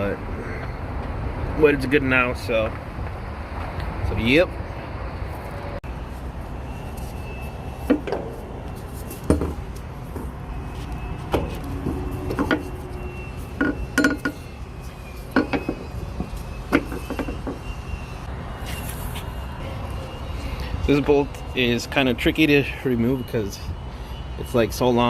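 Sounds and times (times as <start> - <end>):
metal tools clinking and clanking: 11.6 - 17.6.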